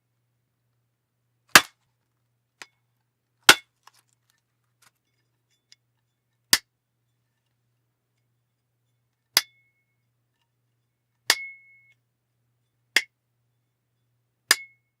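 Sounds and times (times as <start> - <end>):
metal baseball bat hits: 1.5 - 1.7, 3.5 - 3.7, 9.4 - 9.6, 11.3 - 11.7, 14.5 - 14.8.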